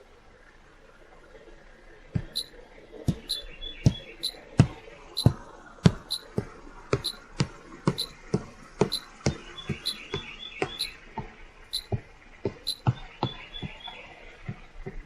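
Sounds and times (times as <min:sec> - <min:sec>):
sharp knocks with squeaks: 0:02.2 - 0:02.5, 0:03.1 - 0:06.4, 0:07.0 - 0:08.2, 0:08.8 - 0:15.0
faint high chirps: 0:02.2 - 0:05.4, 0:06.0 - 0:06.4, 0:07.0 - 0:07.3, 0:07.9 - 0:08.2, 0:08.8 - 0:11.0, 0:11.7 - 0:14.6.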